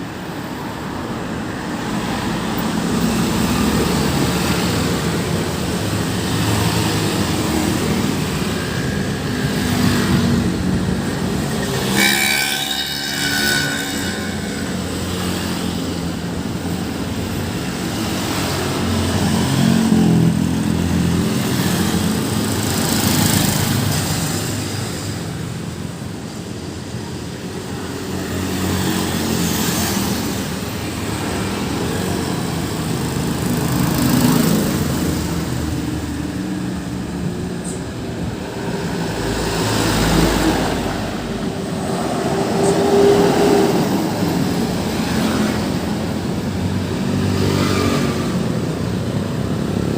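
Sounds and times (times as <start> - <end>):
passing vehicles: 0.0 - 49.9
vehicle horn: 11.8 - 14.6.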